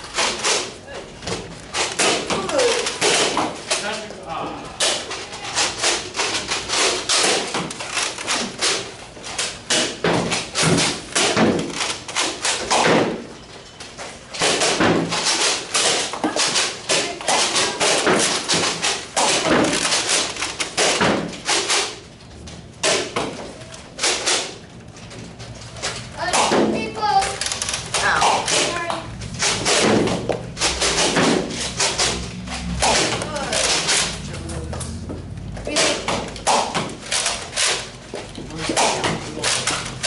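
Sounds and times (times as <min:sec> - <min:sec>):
foam balls thudding on walls: 0:04.8 - 0:13.4, 0:14.3 - 0:22.0, 0:28.0 - 0:34.1.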